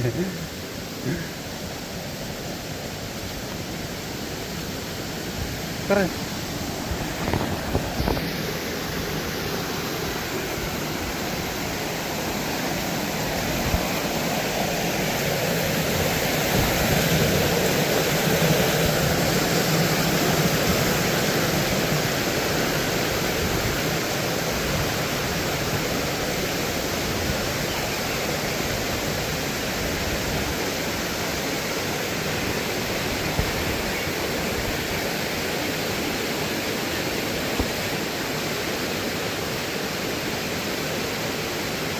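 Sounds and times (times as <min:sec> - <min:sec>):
waterfall crashing into pool: 0:00.0 - 0:41.9.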